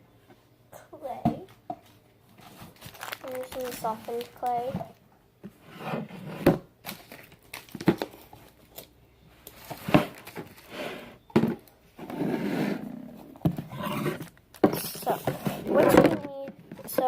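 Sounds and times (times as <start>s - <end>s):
packaging crinkling and rustling: 2.4s - 5.0s, 6.8s - 10.7s.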